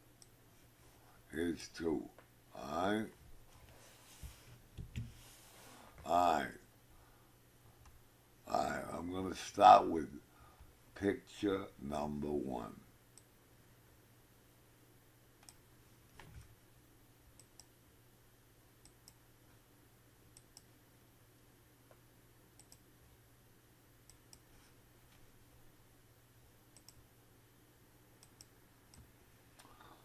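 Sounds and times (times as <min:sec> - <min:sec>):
low steady hum: 0:00.0 - 0:30.0
computer mouse clicks: 0:15.4 - 0:15.6, 0:17.4 - 0:17.7, 0:20.3 - 0:20.7, 0:22.6 - 0:22.8, 0:24.1 - 0:24.5, 0:26.7 - 0:27.0, 0:28.2 - 0:29.7.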